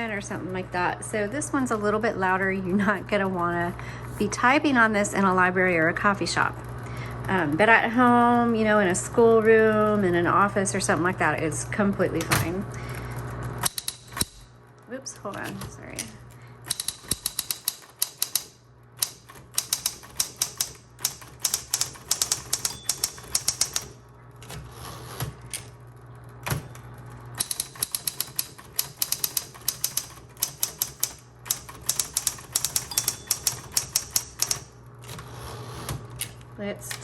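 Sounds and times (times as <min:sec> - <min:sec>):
typewriter motor hum: 0:01.6 - 0:37.0
electric typewriter keystrokes: 0:08.1 - 0:37.0.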